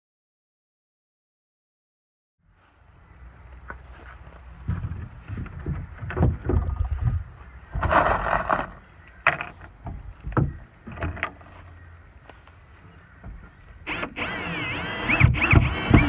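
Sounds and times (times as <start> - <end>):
wood scraping: 3.6 - 16.0
sharp wooden clacks: 13.2 - 16.0.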